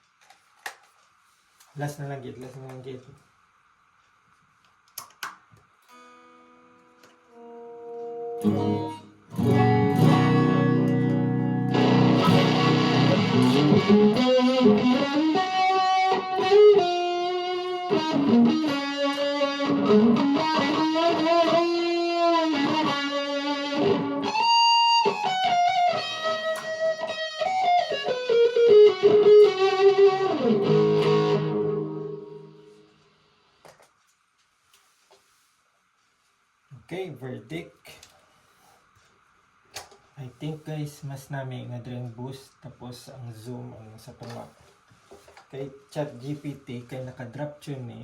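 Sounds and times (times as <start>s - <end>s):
overdriven electric guitar: 5.9s - 33.4s.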